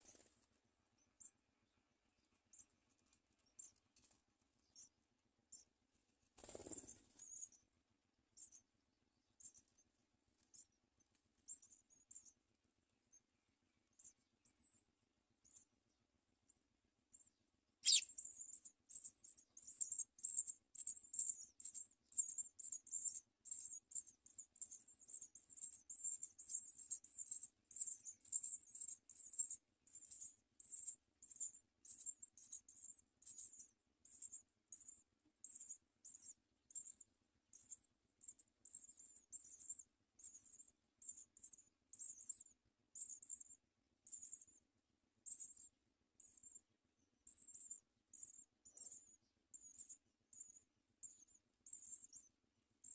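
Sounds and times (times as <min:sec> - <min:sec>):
nestlings cheeping: 0:17.8 - 0:18.1.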